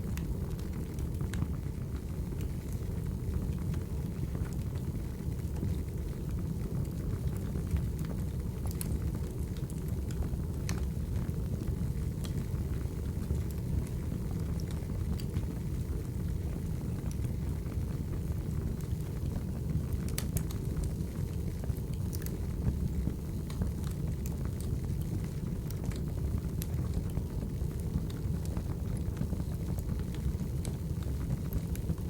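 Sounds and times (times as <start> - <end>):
fire crackling and popping: 0.0 - 32.0
fire rumbling: 0.0 - 32.0.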